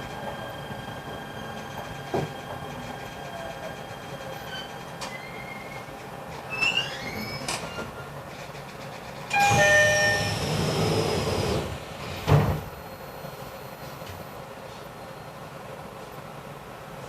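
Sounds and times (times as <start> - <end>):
train door thud: 2.0 - 2.4, 9.3 - 10.4, 11.3 - 12.8.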